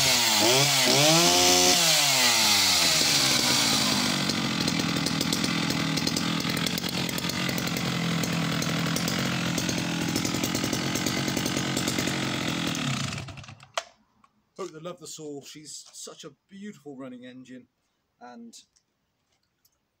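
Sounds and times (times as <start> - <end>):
two-stroke chainsaw revving and idling: 0.0 - 13.7.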